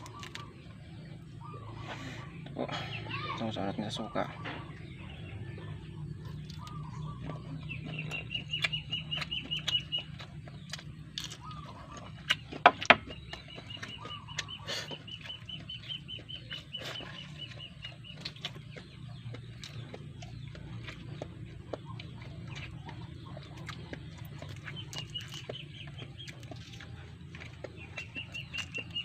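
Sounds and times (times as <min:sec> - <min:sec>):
bird trilling: 0:06.3 - 0:20.5.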